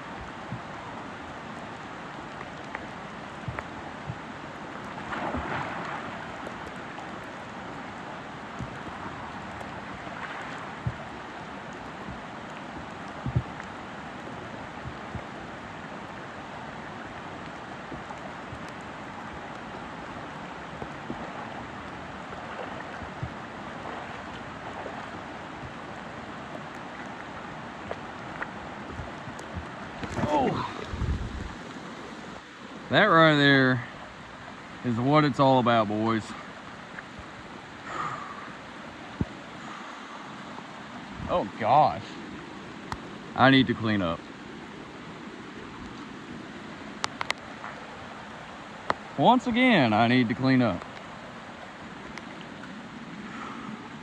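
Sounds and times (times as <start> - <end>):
flowing creek water: 0.0 - 54.0
steady rain falling: 0.0 - 54.0.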